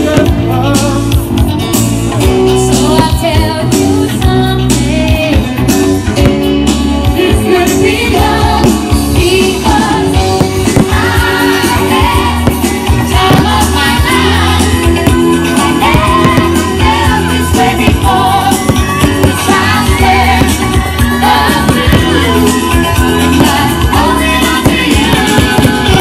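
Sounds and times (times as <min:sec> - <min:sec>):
guitar: 0:00.0 - 0:26.0
steady drum beat: 0:00.0 - 0:26.0
person singing: 0:07.1 - 0:26.0.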